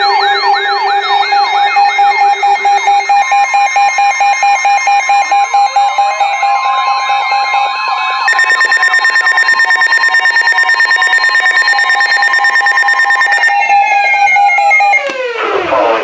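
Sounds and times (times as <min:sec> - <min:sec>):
fast pulsing alarm: 0:00.0 - 0:15.2
siren tones gliding downward: 0:00.0 - 0:16.0
two-tone alert signal: 0:08.2 - 0:15.1.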